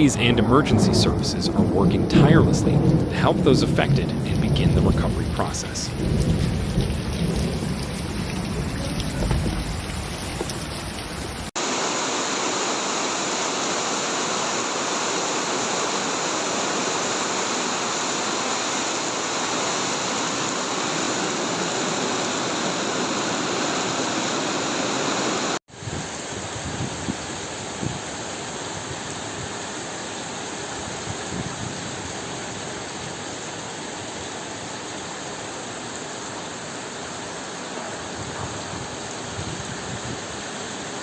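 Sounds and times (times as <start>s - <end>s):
low rumbling: 0.0s - 10.1s
heavy rain: 0.0s - 41.0s.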